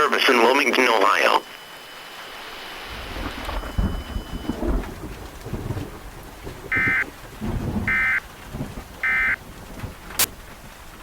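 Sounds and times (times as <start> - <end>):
loud digital data tones: 0.0 - 4.9, 6.7 - 7.0, 7.9 - 8.2, 9.0 - 9.4
rain: 0.0 - 11.0
thunder rumbling: 0.9 - 11.0.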